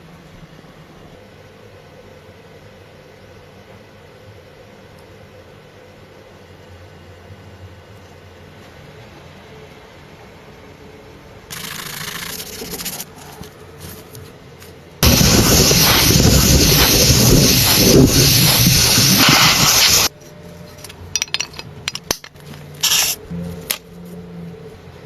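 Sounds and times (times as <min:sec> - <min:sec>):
pressurised spray hissing: 0:15.0 - 0:20.1.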